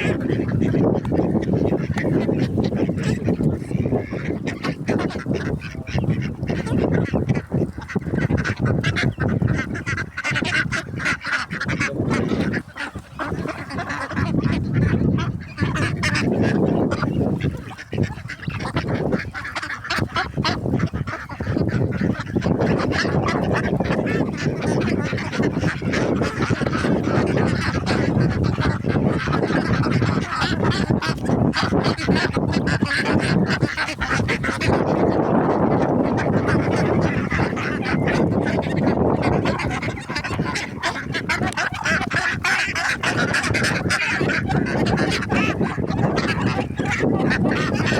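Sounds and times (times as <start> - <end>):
ducks quacking: 0.0 - 47.9.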